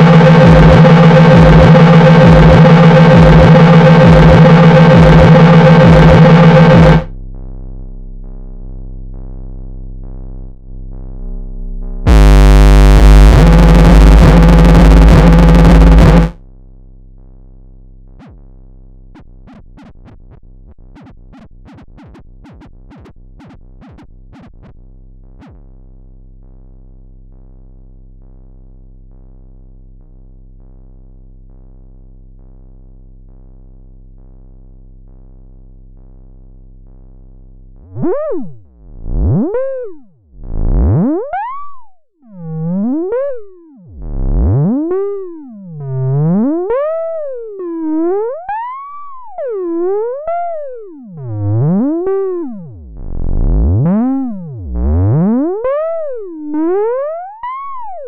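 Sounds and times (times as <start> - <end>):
electronic bleeps and chirps: 0.0 - 7.1, 38.0 - 40.1, 40.8 - 43.8, 53.8 - 58.0
harsh electronic buzz: 0.0 - 7.1, 12.1 - 16.4, 37.9 - 41.4, 42.4 - 58.0
low electronic hum: 0.0 - 19.6, 24.6 - 58.0.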